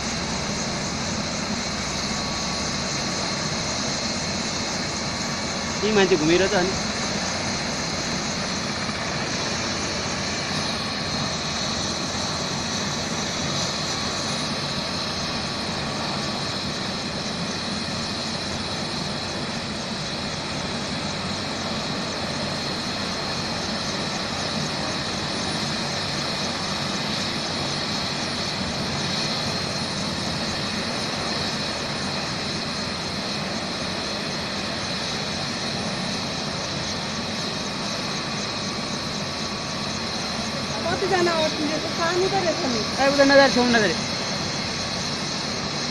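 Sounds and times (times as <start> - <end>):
helicopter engine and rotor: 0.0 - 45.9
turbine high whine: 0.0 - 45.9.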